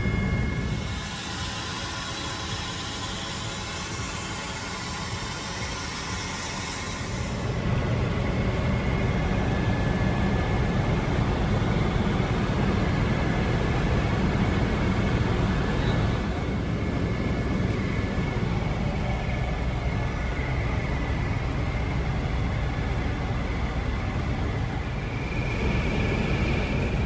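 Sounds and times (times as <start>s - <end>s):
engine rumble: 7.1s - 27.0s.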